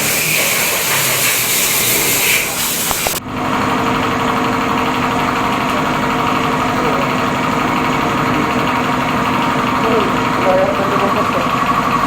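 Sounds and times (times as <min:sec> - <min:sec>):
motorcycle engine idling: 0:02.8 - 0:12.0.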